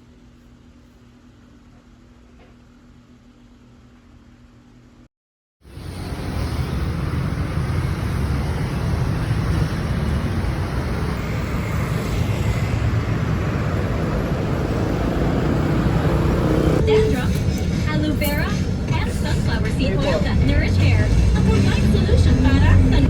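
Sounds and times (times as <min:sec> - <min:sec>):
road traffic rumble: 0:05.6 - 0:23.0.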